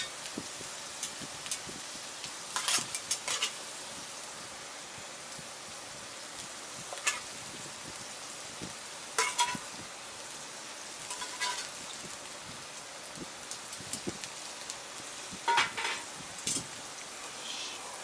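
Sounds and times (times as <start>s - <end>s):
food sizzling in a frying pan: 0.0s - 18.0s
metal tool clinking against pan: 9.2s - 9.6s.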